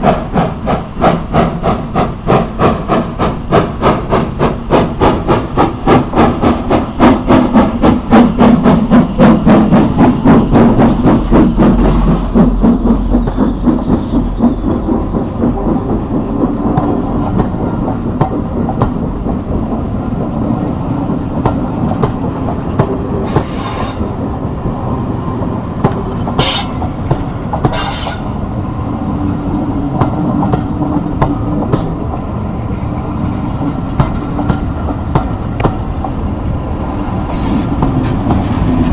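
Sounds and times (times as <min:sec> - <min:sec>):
steam locomotive exhaust chuffing: 0:00.0 - 0:28.6, 0:37.0 - 0:38.9
train rumble and wheel clicks: 0:00.0 - 0:38.9.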